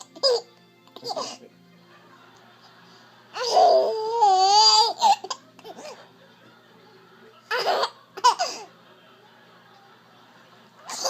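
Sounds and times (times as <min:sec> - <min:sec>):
baby laughing: 0:00.0 - 0:01.5, 0:03.3 - 0:06.1, 0:07.5 - 0:08.7, 0:10.8 - 0:11.0.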